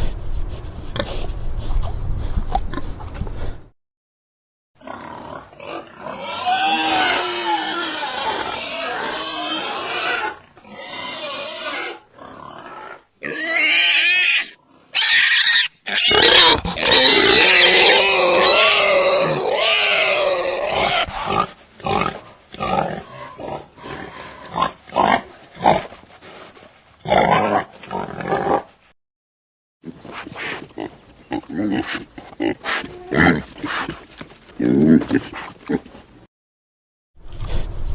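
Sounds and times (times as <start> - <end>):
wild boar squealing: 4.9 - 25.8
wild boar grunting: 29.9 - 36.0.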